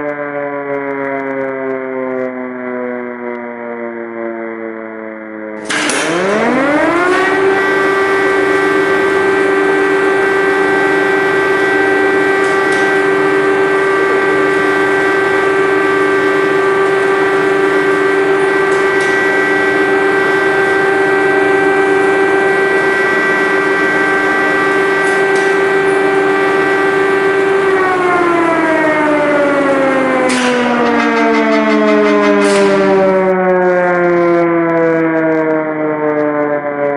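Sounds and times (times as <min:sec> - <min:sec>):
air-raid siren wailing: 0:00.0 - 0:36.9.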